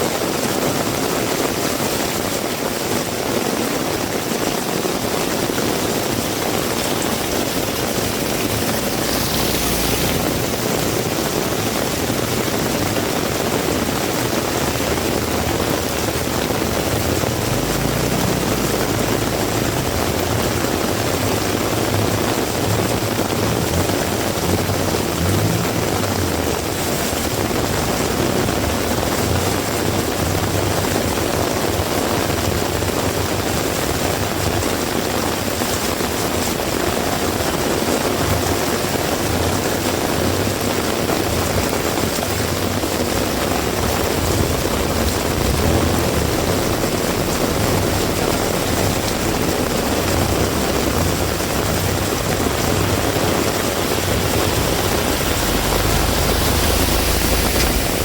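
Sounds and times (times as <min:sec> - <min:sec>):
heavy rain falling: 0:00.0 - 0:58.0
low rumble: 0:06.0 - 0:31.2, 0:42.7 - 0:58.0.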